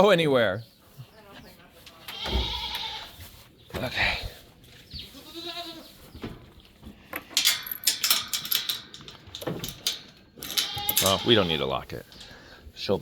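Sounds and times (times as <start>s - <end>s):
goat bleating: 2.0s - 3.2s, 5.1s - 6.0s, 10.6s - 11.8s.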